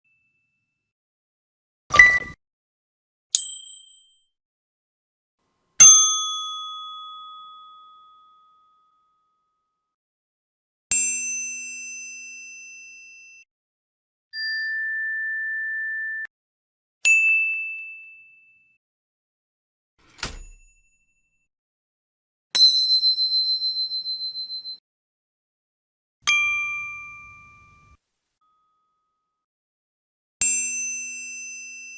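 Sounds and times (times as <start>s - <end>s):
bell-like ding effects: 1.9s - 2.4s.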